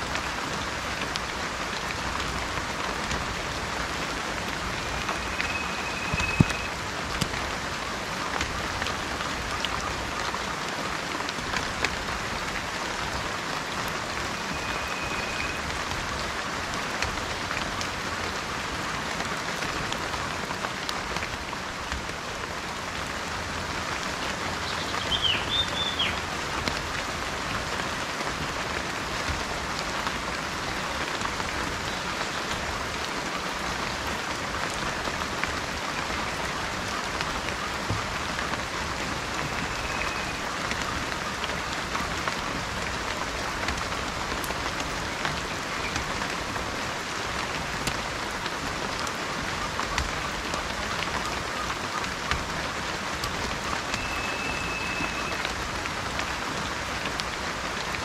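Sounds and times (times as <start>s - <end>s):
steady rain falling: 0.0s - 58.0s
water dripping: 4.4s - 7.5s
bird chirping: 5.1s - 6.7s, 24.6s - 26.2s
bird whistling: 5.1s - 6.7s, 14.5s - 15.6s, 25.0s - 26.2s, 39.7s - 40.4s, 54.0s - 55.4s.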